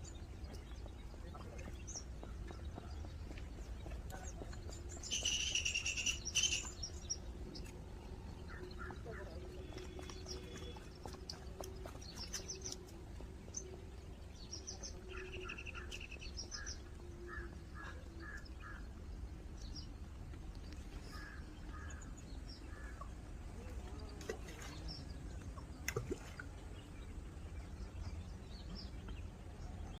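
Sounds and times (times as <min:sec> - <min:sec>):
birds calling and chirping: 0:00.0 - 0:30.0.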